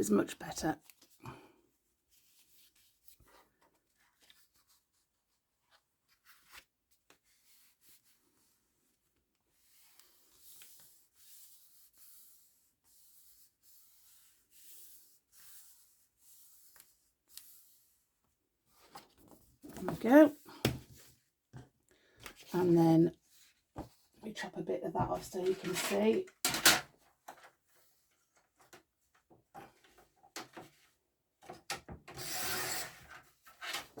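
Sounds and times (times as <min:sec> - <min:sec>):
rubbing strokes on paper: 0:09.6 - 0:18.0.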